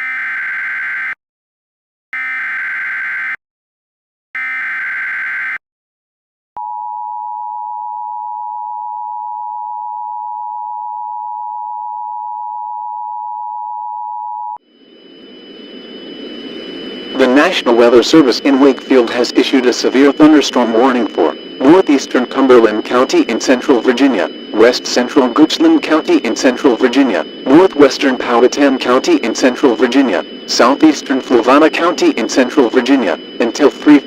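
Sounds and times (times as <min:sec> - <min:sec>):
buzzy digital tone bursts: 0:14.9 - 0:34.0.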